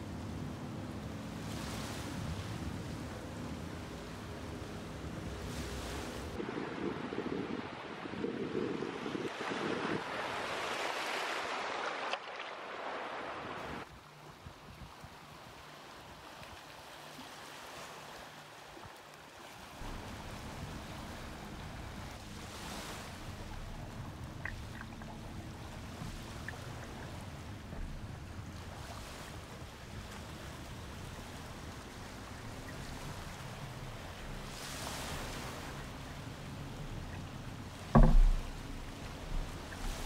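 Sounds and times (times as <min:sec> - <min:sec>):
water lapping around kayak: 0:00.0 - 0:40.0.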